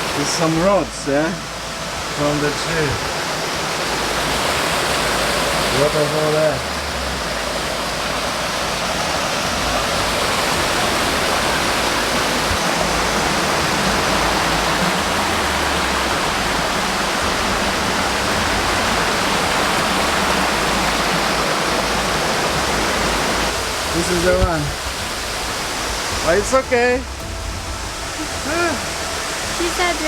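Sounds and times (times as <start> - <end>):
waterfall rushing: 0.0 - 30.0.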